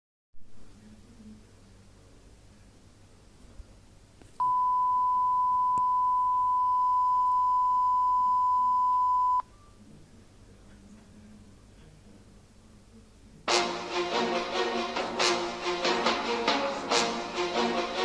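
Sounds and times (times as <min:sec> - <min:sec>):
long steady beep: 0:04.4 - 0:09.4.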